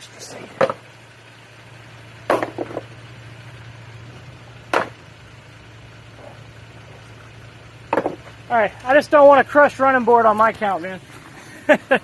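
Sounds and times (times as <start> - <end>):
steady low hum: 0.0 - 12.0
rocks knocking together: 7.9 - 8.3.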